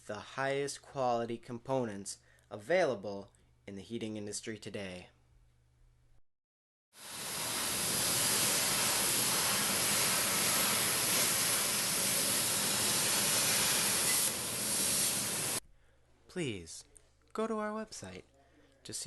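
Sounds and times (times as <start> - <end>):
loud rushing hiss: 7.0 - 15.6.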